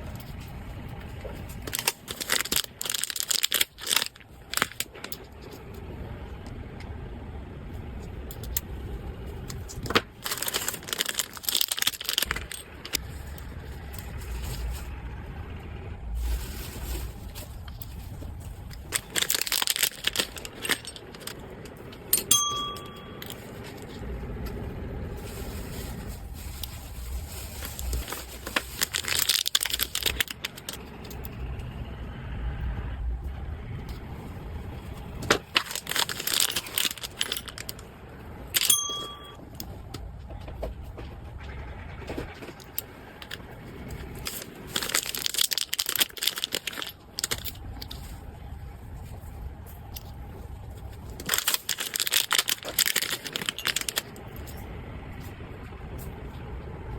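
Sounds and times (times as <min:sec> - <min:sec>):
packaging rustling and crinkling: 0:00.0 - 0:05.5, 0:09.6 - 0:15.0, 0:16.1 - 0:21.9, 0:23.2 - 0:30.9, 0:34.2 - 0:37.9, 0:42.3 - 0:50.0, 0:50.6 - 0:54.5.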